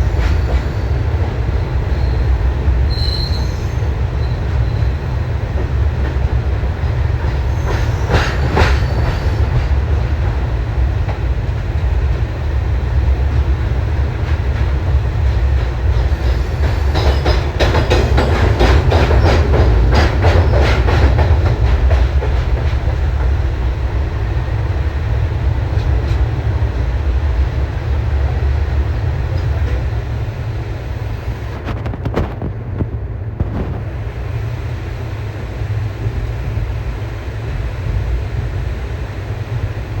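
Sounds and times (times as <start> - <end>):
train rumbling on rails: 0.0 - 40.0
wheels clattering over rail joints: 14.2 - 23.4.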